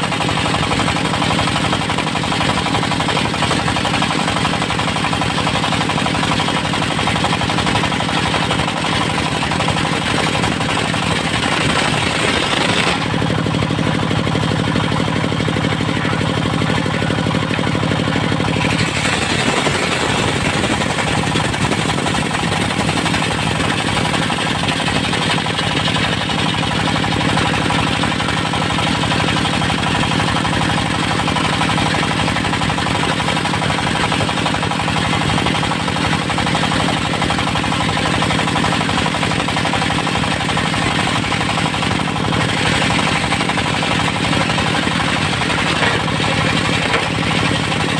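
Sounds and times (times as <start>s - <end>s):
sawmill engine running: 0.0s - 47.9s.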